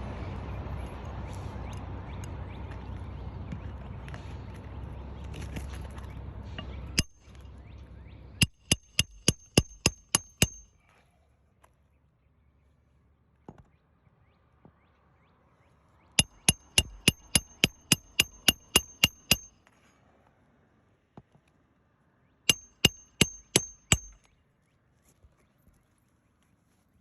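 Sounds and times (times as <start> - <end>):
hammer striking roofing nails: 7.0 - 7.2, 8.4 - 10.7, 16.2 - 19.5, 22.5 - 24.2.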